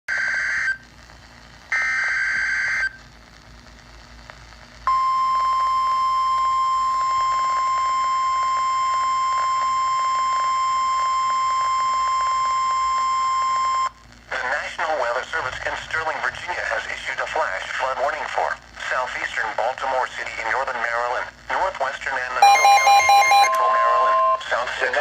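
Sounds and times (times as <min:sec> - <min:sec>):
screechy digital header data: 0:22.4 - 0:25.0
steady attention tone: 0:22.4 - 0:25.0.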